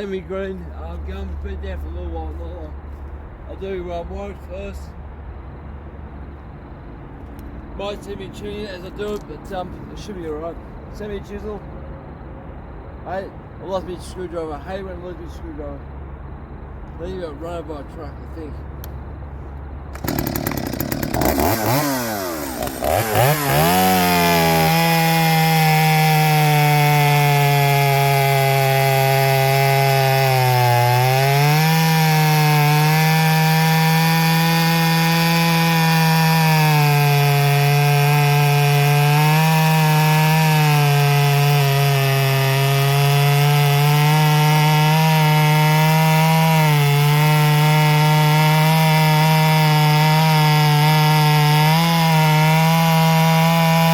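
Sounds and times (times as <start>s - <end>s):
chainsaw cutting wood: 19.9s - 53.9s.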